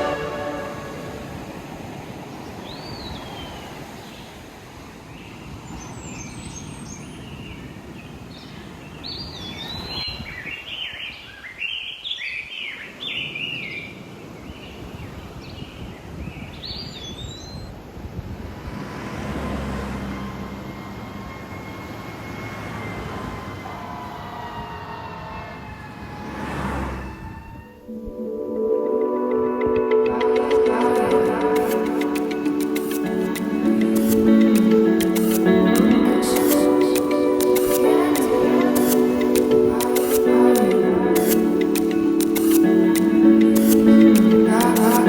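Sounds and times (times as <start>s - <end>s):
ocean surf rushing: 0.0s - 5.1s, 17.9s - 45.0s.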